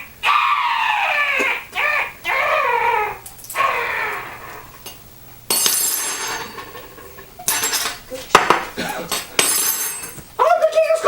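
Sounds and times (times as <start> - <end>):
person crying out: 0.0 - 4.8
ringing metal clangs: 4.8 - 10.2.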